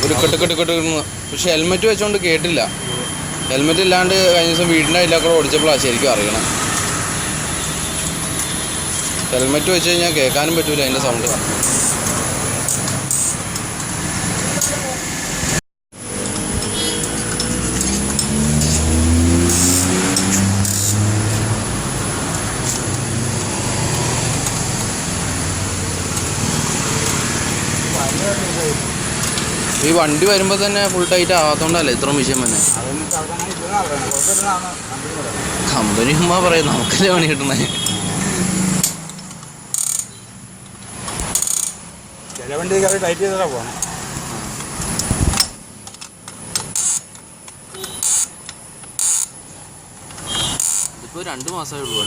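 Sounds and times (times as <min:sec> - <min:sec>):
road traffic: 0:00.0 - 0:52.0
metallic tool clicks and taps: 0:16.2 - 0:18.8, 0:38.8 - 0:43.0.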